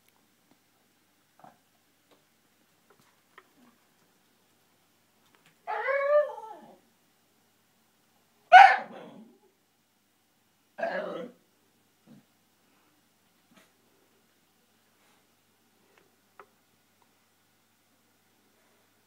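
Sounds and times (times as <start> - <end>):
dog whining yowl: 5.6 - 6.8, 10.8 - 11.4
dog barking: 8.5 - 9.3.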